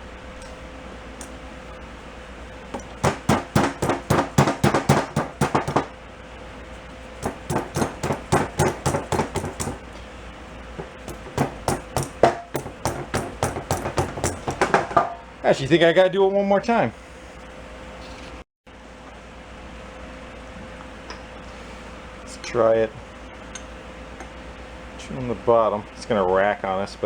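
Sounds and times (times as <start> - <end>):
rapid hammer blows on metal: 2.7 - 6.0, 7.2 - 10.0, 10.8 - 15.2.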